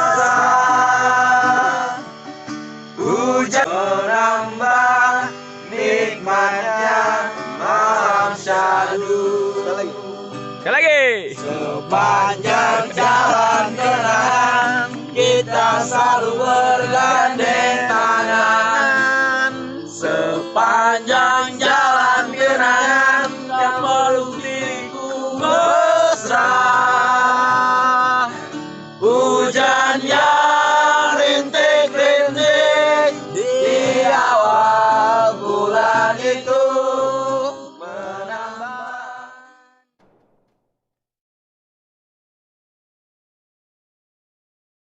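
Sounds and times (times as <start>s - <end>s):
man singing slow pop song: 0.0s - 2.1s, 3.0s - 5.4s, 11.3s - 28.4s, 29.0s - 39.6s
plucked guitar: 0.0s - 39.0s.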